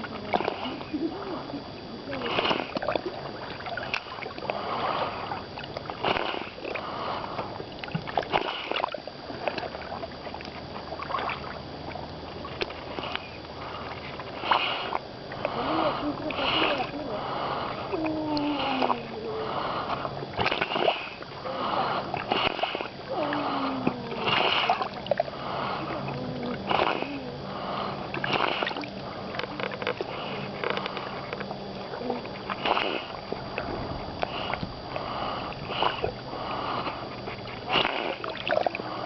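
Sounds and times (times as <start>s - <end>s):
falling gurgling tone: 31.5s - 39.0s.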